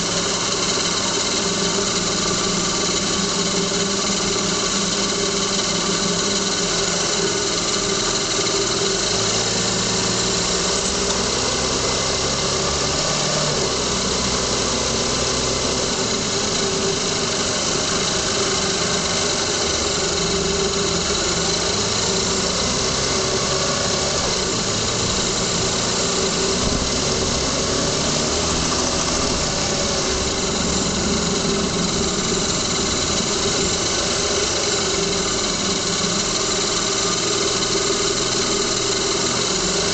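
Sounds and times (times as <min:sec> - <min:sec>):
car engine running: 0:00.0 - 0:39.9
rattling ticking noise: 0:15.3 - 0:39.9.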